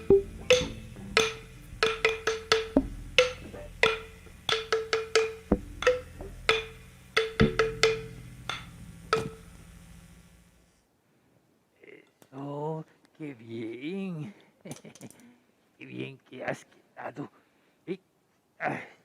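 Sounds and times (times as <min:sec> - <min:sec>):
wood-block knocks: 0:00.0 - 0:09.4
low sustained tone: 0:00.0 - 0:10.5.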